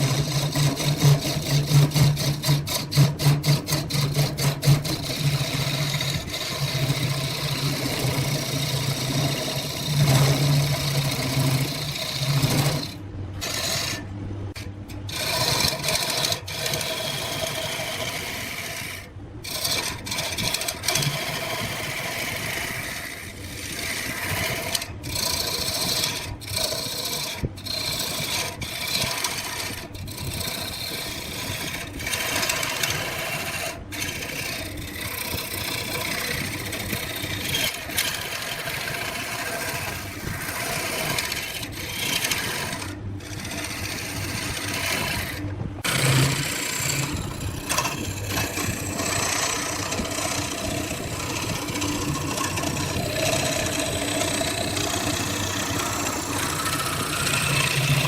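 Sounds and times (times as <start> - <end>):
wood lathe scraping wood: 0.0 - 58.0.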